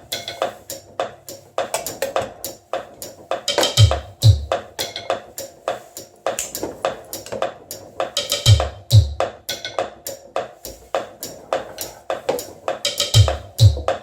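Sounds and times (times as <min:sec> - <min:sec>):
deep kick drum thumps: 0:03.8 - 0:04.6, 0:08.5 - 0:09.3, 0:13.1 - 0:14.0.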